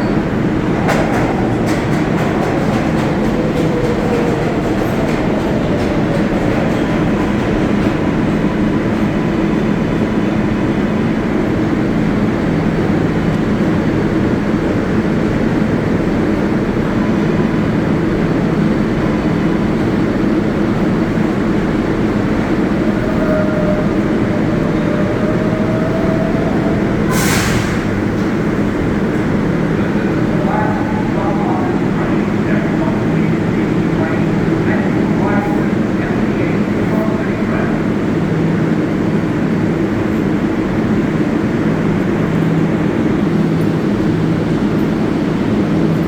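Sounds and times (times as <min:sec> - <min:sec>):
subway train rumbling: 0:00.0 - 0:46.0
air hiss: 0:27.1 - 0:28.0.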